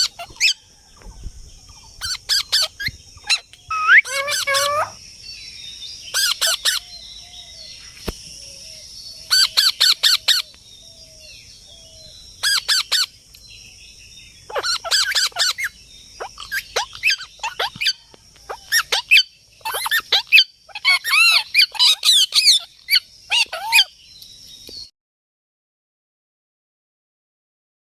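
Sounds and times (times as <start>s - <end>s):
parrots squawking: 0.0s - 0.6s, 2.0s - 5.0s, 6.1s - 6.9s, 9.3s - 10.4s, 12.4s - 13.1s, 14.5s - 23.9s
faint lower parrot calls: 2.0s - 5.0s, 14.5s - 23.9s.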